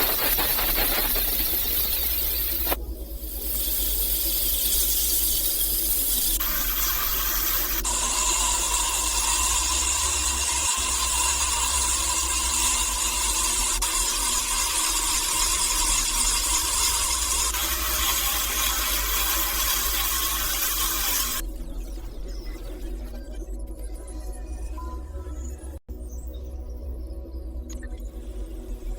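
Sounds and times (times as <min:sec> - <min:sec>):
power tool whirring: 0:00.0 - 0:02.8, 0:06.4 - 0:21.4.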